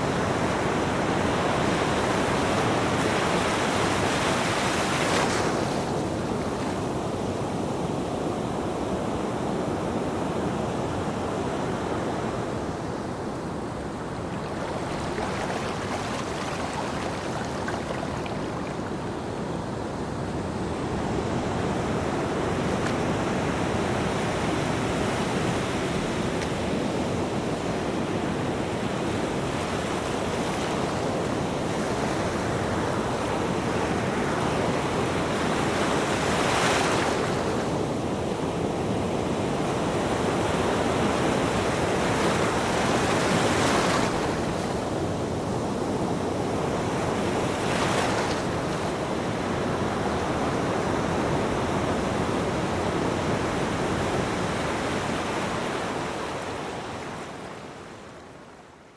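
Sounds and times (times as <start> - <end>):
ocean waves on a beach: 0.0 - 58.9
breaking waves: 14.0 - 19.2.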